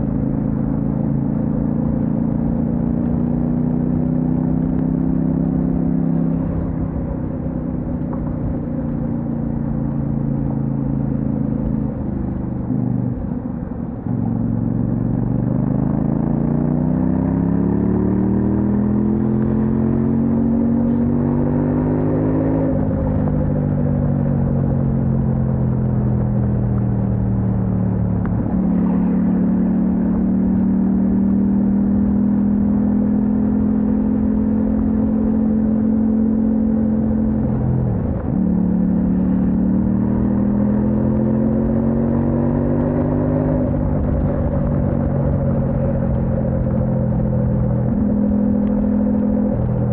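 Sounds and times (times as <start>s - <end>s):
motorcycle engine revving: 14.0s - 49.9s.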